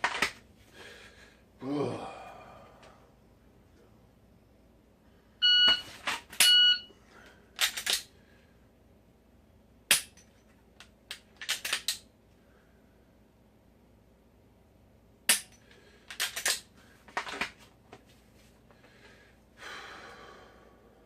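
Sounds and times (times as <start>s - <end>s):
pistol handling clicks and rattles: 7.6s - 8.1s, 10.0s - 12.1s, 15.3s - 17.6s.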